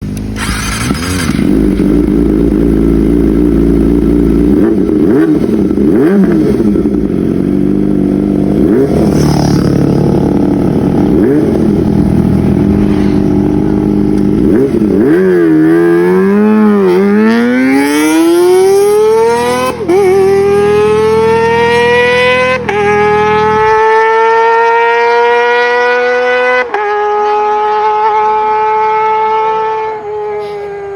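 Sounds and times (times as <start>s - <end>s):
motorcycle engine revving: 0.0s - 30.9s.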